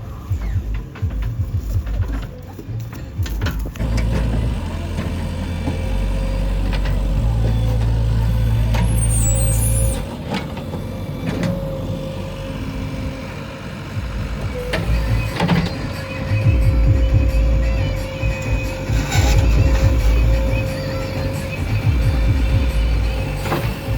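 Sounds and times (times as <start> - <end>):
backhoe diesel engine under load: 0.0 - 23.9
steady whine: 3.8 - 23.9
brief high squeal: 8.8 - 10.0.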